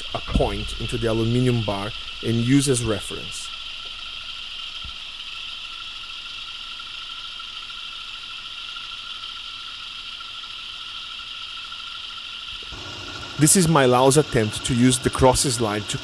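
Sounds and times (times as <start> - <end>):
lathe motor whining: 12.6 - 16.0.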